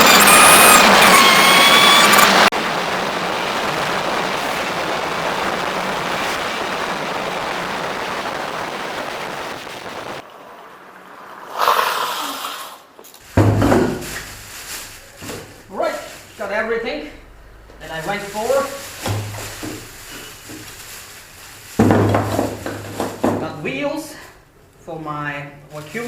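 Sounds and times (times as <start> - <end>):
handling sounds: 13.0 - 16.4, 17.8 - 23.5.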